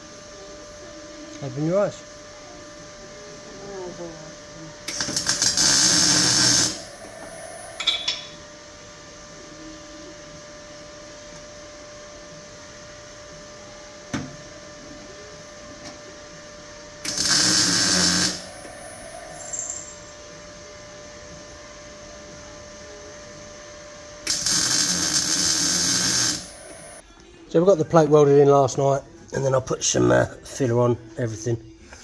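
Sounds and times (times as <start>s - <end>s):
steady hum: 0.0s - 28.1s
crackling welding: 4.8s - 8.4s, 16.8s - 22.2s, 23.6s - 27.0s.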